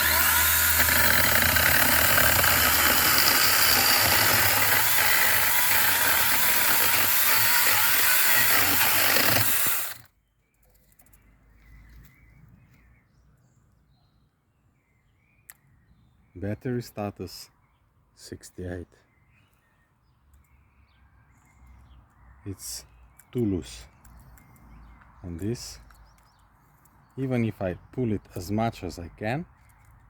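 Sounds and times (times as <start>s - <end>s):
electric chainsaw cutting wood: 0.0s - 10.1s.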